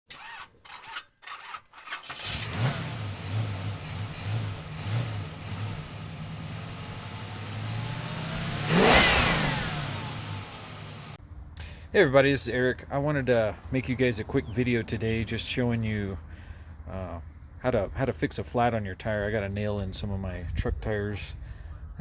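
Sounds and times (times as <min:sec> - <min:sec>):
car engine starting and revving: 0:02.1 - 0:11.2
vehicle passing close: 0:02.2 - 0:11.2.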